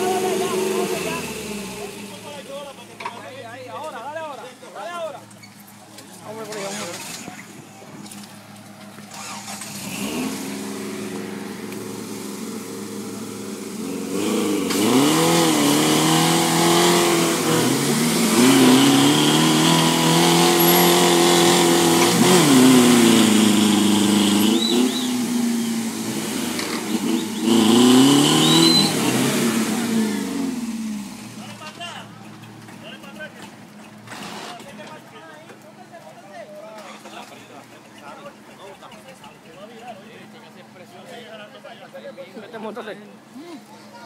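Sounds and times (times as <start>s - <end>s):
vehicle engine revving hard: 0.0s - 2.4s, 9.1s - 31.5s, 34.0s - 34.6s.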